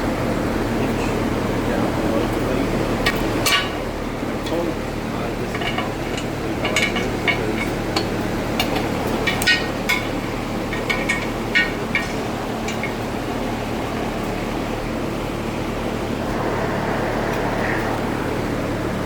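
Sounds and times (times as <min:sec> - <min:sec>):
steady background hum: 0:00.0 - 0:19.0
pliers clinking on wheel rim: 0:05.5 - 0:13.1.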